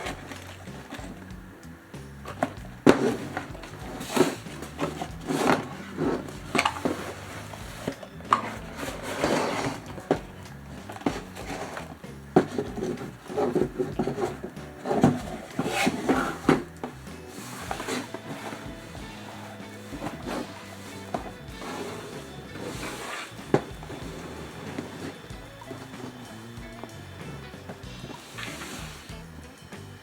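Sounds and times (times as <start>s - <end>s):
soft background music: 0.0s - 30.0s
cardboard box scraping and rustling: 2.3s - 26.4s, 27.7s - 29.2s.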